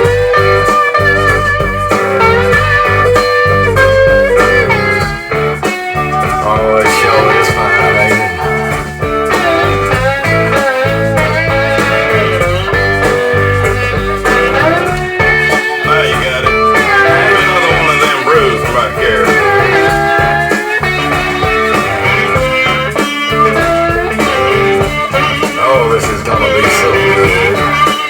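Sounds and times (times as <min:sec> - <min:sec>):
bass and drums: 0:00.0 - 0:28.0
slide guitar bending notes: 0:00.0 - 0:28.0.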